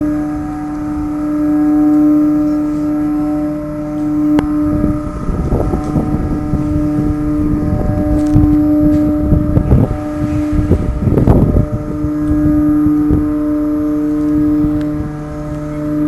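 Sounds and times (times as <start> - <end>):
ship machinery hum: 0.0 - 16.0
wind buffeting microphone: 0.0 - 16.0.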